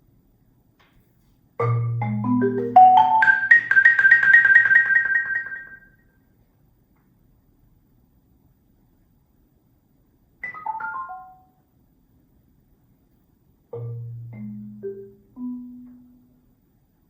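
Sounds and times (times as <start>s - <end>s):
marimba notes: 1.6s - 5.9s, 13.8s - 16.3s.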